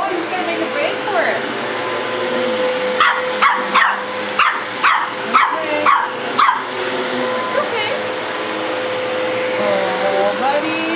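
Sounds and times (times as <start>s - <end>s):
vacuum cleaner running: 0.0s - 10.9s
dog barking: 3.0s - 6.7s.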